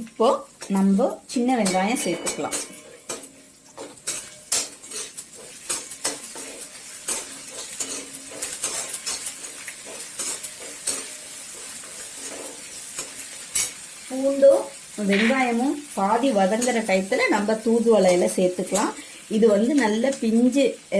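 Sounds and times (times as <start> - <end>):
food sizzling in oil: 0.0 - 20.9
spoon stirring and scraping pan: 0.0 - 20.9.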